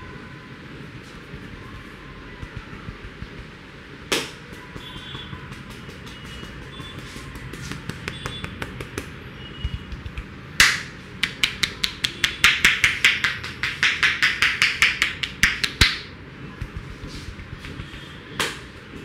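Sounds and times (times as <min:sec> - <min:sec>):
hands slapping on head: 0:04.1 - 0:09.2, 0:09.8 - 0:18.8.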